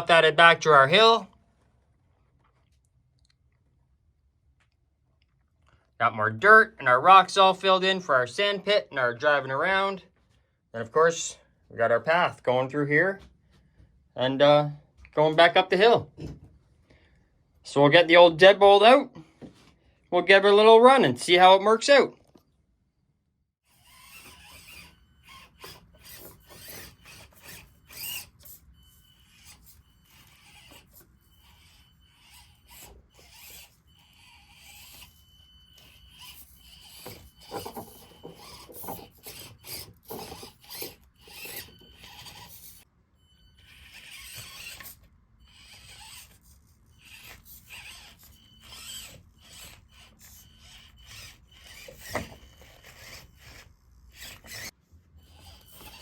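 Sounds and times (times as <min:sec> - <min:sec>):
small electric motor whining: 0:23.6 - 0:56.0.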